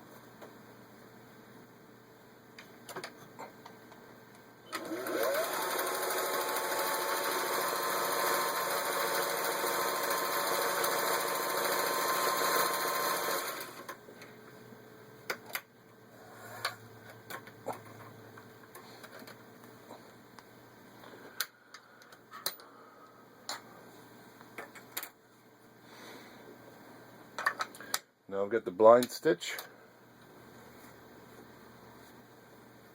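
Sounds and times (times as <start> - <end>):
sewing machine running: 4.7 - 14.0.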